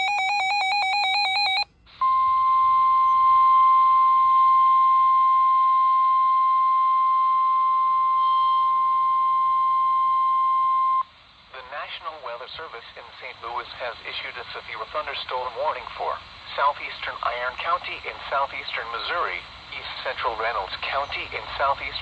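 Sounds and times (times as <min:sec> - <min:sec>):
radio hiss: 0:11.0 - 0:22.0.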